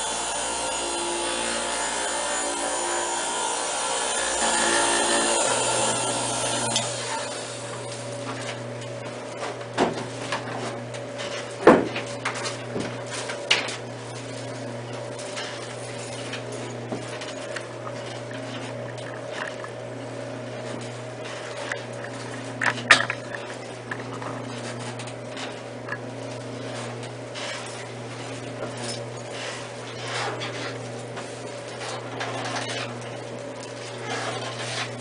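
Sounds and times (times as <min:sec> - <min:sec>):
small motor buzzing: 0:00.0 - 0:08.0.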